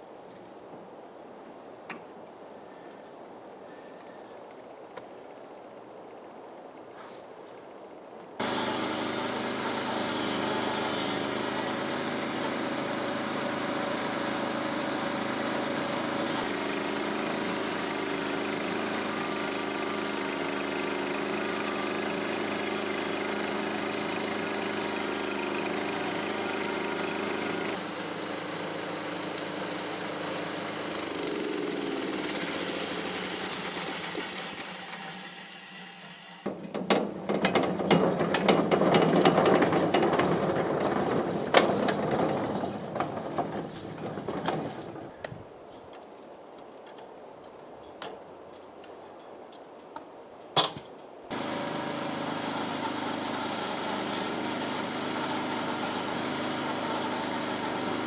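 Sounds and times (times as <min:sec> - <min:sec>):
small gasoline engine running: 0:08.4 - 0:36.4, 0:38.2 - 0:44.9, 0:51.3 - 0:58.0
saw cutting log: 0:08.4 - 0:36.5, 0:51.3 - 0:58.0.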